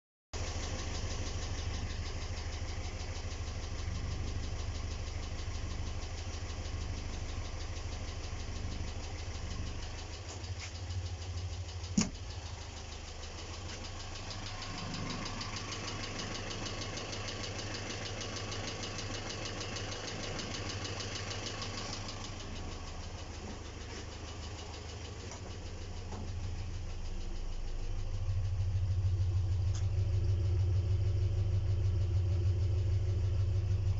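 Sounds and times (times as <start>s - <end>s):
engine with metallic ticking clatter: 0.4s - 33.9s
sharp click: 11.9s - 12.3s.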